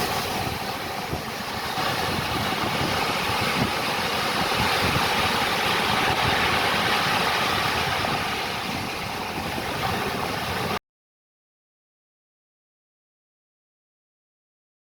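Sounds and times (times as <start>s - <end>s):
ocean waves on shore: 0.0s - 10.8s.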